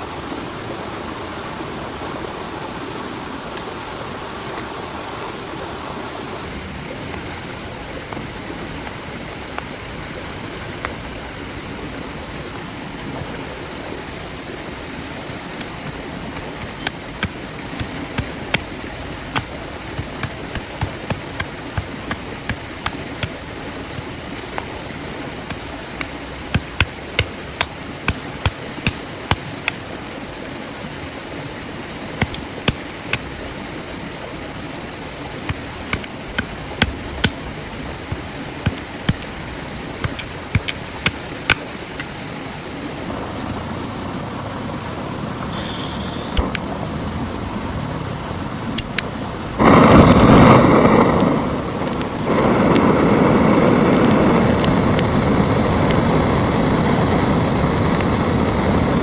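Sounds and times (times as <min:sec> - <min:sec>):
heavy rain on a tarp: 0:00.0 - 0:59.0
raindrops knocking on plastic: 0:07.0 - 0:11.2, 0:15.4 - 0:30.2, 0:32.0 - 0:33.9, 0:35.1 - 0:42.3, 0:48.8 - 0:58.3.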